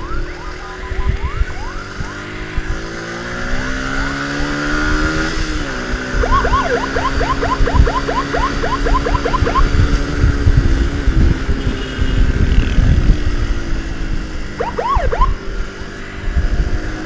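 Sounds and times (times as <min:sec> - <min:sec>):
electronic siren chirps: 0:00.0 - 0:02.3, 0:06.1 - 0:10.0, 0:14.5 - 0:15.6
motorcycle engine revving: 0:01.7 - 0:17.0.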